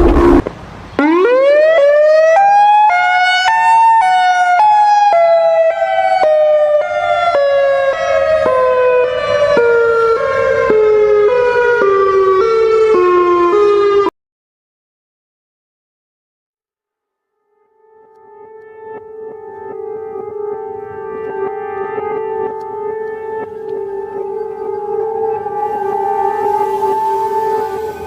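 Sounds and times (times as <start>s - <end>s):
siren winding up and falling: 0.0s - 14.1s, 21.3s - 28.0s.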